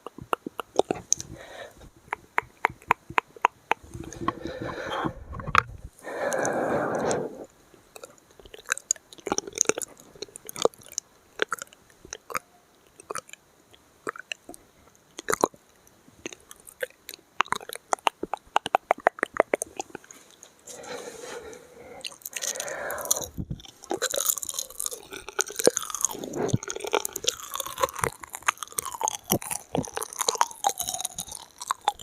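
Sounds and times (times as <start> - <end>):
wet lip and tongue clicks: 0.0 - 20.6, 22.0 - 32.0.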